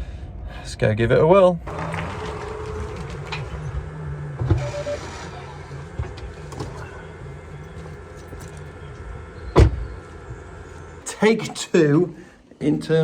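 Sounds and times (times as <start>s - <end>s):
low mechanical hum: 0.0s - 13.0s.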